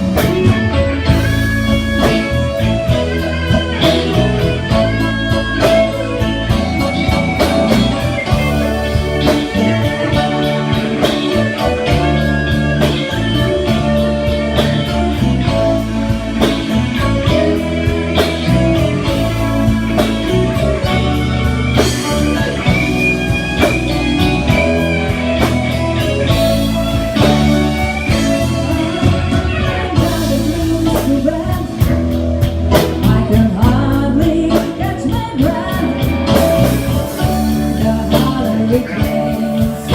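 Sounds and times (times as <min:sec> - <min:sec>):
bass guitar: 0:00.0 - 0:39.9
drum kit beat: 0:00.0 - 0:39.9
electric guitar: 0:00.0 - 0:39.9
person singing: 0:29.0 - 0:39.9.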